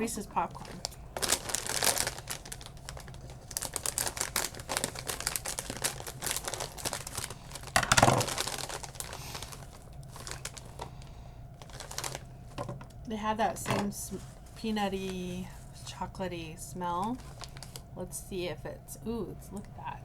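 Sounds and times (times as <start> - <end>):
plastic snack bag crinkling: 0.0 - 12.8, 17.0 - 17.9.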